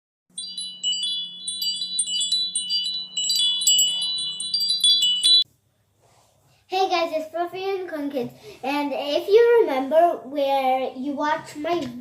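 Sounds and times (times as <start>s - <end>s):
wind chimes tinkling: 0.3s - 5.4s
faint steady hum: 0.3s - 5.9s.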